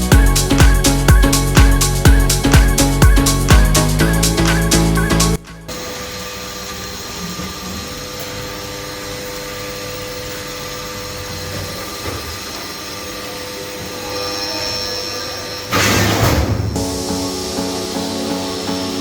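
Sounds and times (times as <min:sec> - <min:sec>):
milling spindle whine: 0:04.1 - 0:15.8
metal cutting hiss: 0:13.9 - 0:19.0.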